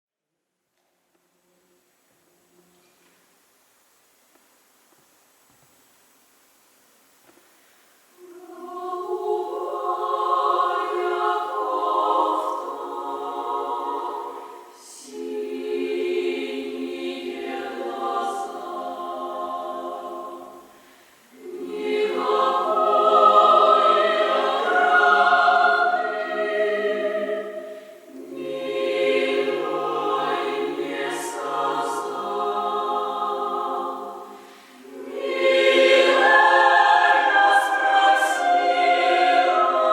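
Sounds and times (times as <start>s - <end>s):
choir singing a cappella: 8.2s - 39.9s.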